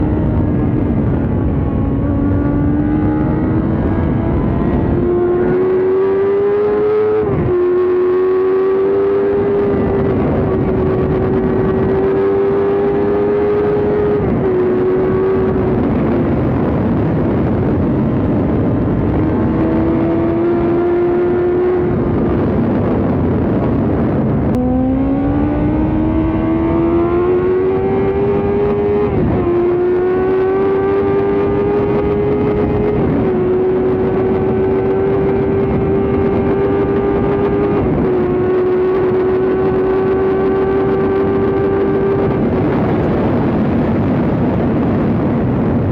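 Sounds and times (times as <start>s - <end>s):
motorcycle engine revving: 0.0s - 45.9s.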